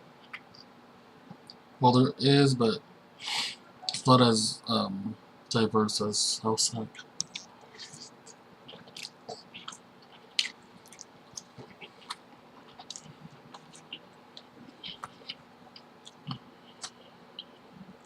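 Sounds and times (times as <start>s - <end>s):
wet chewing mouth clicks: 7.0s - 18.0s.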